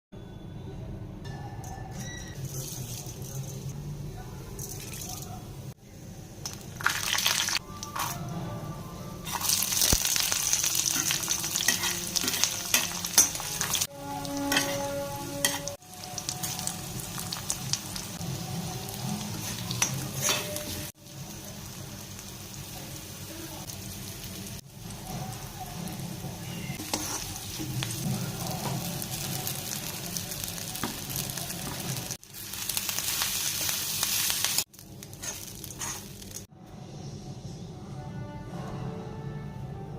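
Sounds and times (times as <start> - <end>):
food sizzling in a pan: 6.5 - 8.2, 9.2 - 36.5.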